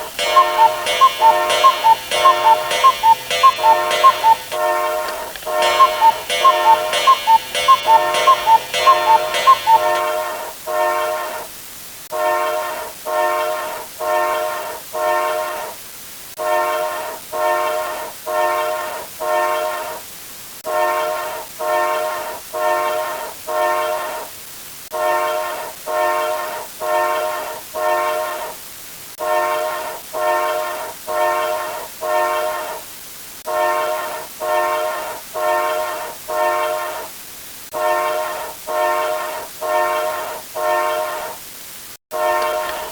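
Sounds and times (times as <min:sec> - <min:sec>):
rapid alarm-like ringing: 0:00.0 - 0:11.2
train horn blasts: 0:00.0 - 0:11.5, 0:12.1 - 0:15.7, 0:16.4 - 0:20.0, 0:20.7 - 0:24.2, 0:24.9 - 0:28.6, 0:29.2 - 0:32.4, 0:33.5 - 0:37.1, 0:37.7 - 0:41.4, 0:42.1 - 0:42.9.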